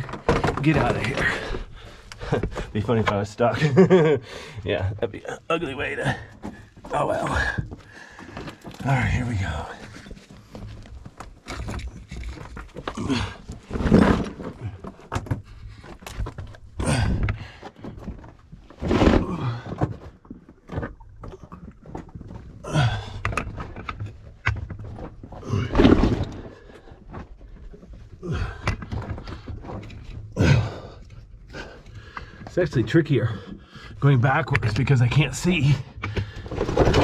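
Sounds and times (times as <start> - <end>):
body and gear scraping on rock: 0.0 - 37.0
heavy breathing: 1.1 - 2.8, 4.1 - 4.8, 5.9 - 8.8, 16.8 - 18.1, 22.6 - 23.5, 28.2 - 29.6, 30.3 - 32.6, 33.2 - 34.0, 35.8 - 36.8
person grunting with effort: 13.0 - 13.4, 16.8 - 17.4, 22.6 - 23.2, 28.2 - 28.6, 30.4 - 31.0.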